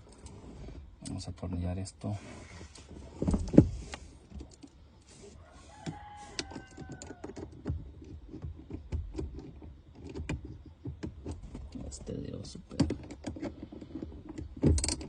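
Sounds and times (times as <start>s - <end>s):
clicks of screws and plastic parts: 12.7s - 15.0s.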